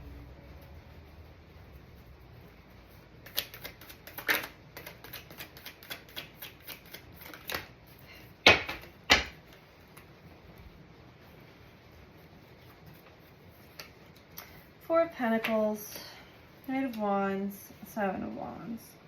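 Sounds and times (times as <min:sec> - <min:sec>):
cards being shuffled: 0:02.9 - 0:07.9, 0:12.4 - 0:14.7.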